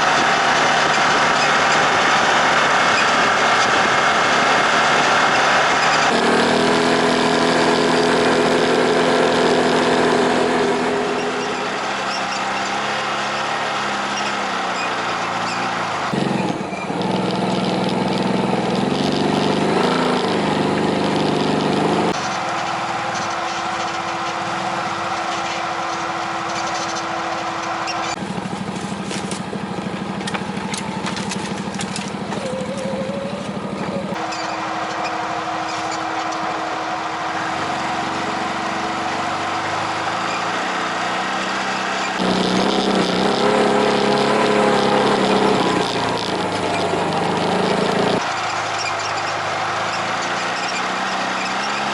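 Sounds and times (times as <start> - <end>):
off-road vehicle engine running: 0.0 - 51.9.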